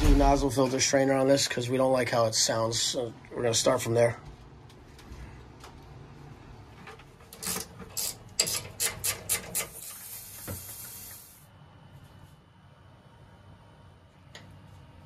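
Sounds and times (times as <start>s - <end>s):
steady high hiss: 9.7s - 11.7s.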